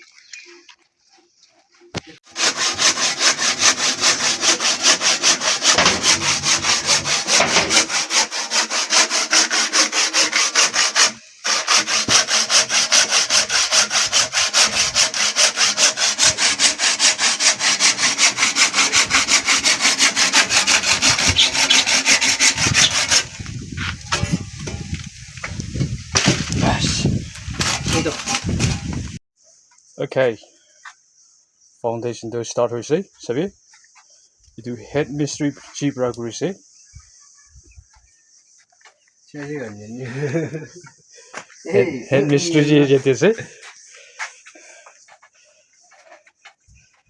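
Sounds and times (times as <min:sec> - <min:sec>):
hand saw cutting wood: 0:02.2 - 0:25.6, 0:26.2 - 0:29.2, 0:42.2 - 0:43.4.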